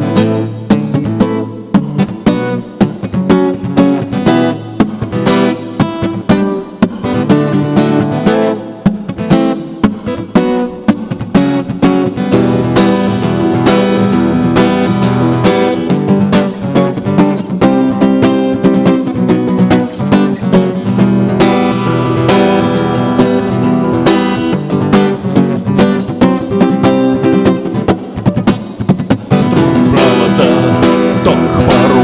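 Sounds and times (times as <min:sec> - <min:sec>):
acoustic guitar strumming: 0:00.0 - 0:32.0.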